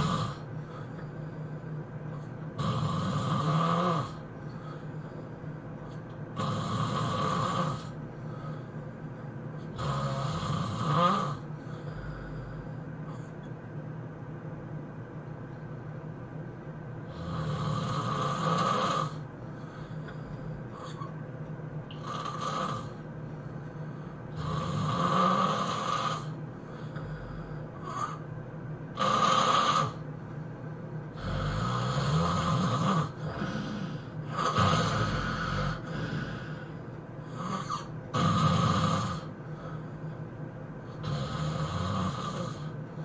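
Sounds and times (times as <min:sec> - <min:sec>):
person snoring loudly: 0:00.0 - 0:00.5, 0:02.6 - 0:04.2, 0:06.4 - 0:08.0, 0:09.7 - 0:12.6, 0:17.1 - 0:19.2, 0:21.9 - 0:23.0, 0:24.3 - 0:26.4, 0:27.0 - 0:28.2, 0:28.9 - 0:30.0, 0:31.1 - 0:39.8, 0:40.9 - 0:42.8
quiet breathing: 0:00.0 - 0:09.8, 0:10.6 - 0:13.6, 0:17.0 - 0:21.2, 0:21.9 - 0:28.5, 0:31.1 - 0:41.2, 0:41.9 - 0:43.0.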